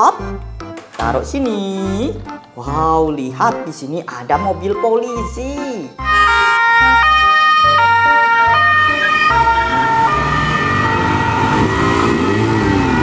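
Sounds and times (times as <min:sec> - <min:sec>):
two-tone police siren: 0:06.0 - 0:13.0
wailing siren: 0:06.0 - 0:13.0.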